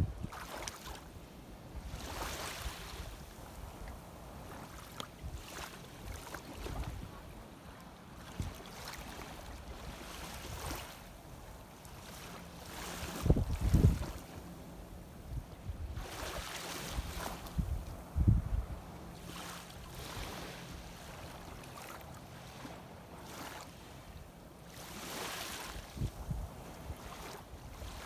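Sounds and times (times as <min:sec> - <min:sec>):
wind on microphone: 0:00.0 - 0:00.6, 0:01.7 - 0:07.4, 0:08.2 - 0:11.0, 0:12.7 - 0:18.9, 0:25.8 - 0:28.0
shallow seawater splashing: 0:00.2 - 0:01.1, 0:01.8 - 0:07.4, 0:08.0 - 0:14.6, 0:15.9 - 0:17.7, 0:19.2 - 0:28.0.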